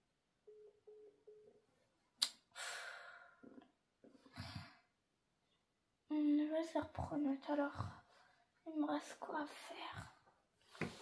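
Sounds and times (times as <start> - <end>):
girl sighing: 2.6 - 3.5.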